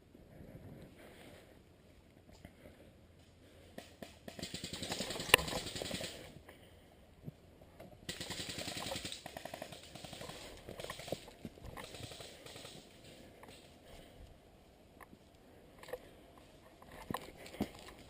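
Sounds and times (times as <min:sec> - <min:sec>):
airsoft guns firing full-auto: 0:04.0 - 0:06.3, 0:08.1 - 0:13.7.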